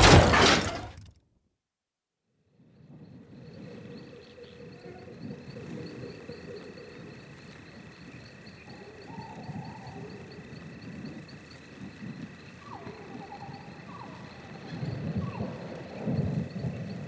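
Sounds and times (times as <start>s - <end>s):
insects trilling: 2.7s - 17.0s
bird-like call: 12.6s - 16.3s.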